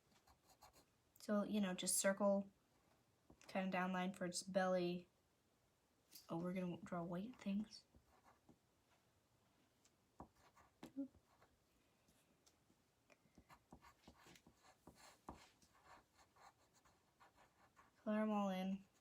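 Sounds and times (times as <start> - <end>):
pencils scratching on paper: 10.2 - 11.5, 13.4 - 18.1, 18.7 - 19.0.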